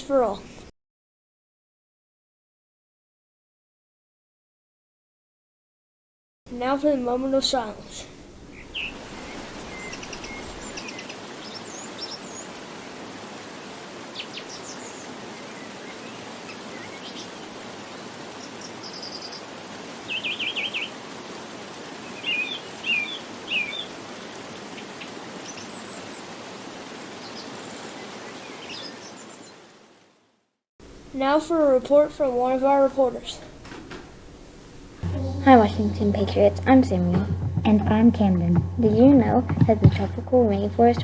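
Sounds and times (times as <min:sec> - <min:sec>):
birds chirping: 0:00.0 - 0:00.7, 0:06.5 - 0:29.7, 0:30.8 - 0:35.0
steady background hiss: 0:00.0 - 0:00.7, 0:06.5 - 0:37.0.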